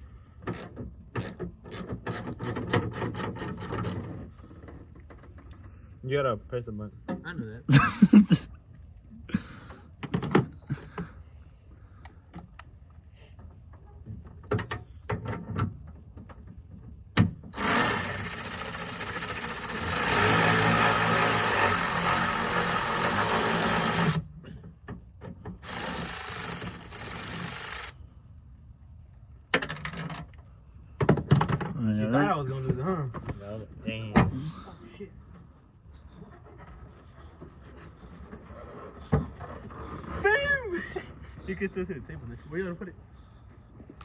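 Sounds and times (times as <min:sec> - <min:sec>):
electric ratchet running: 0:17.6 - 0:24.3, 0:25.6 - 0:28.0.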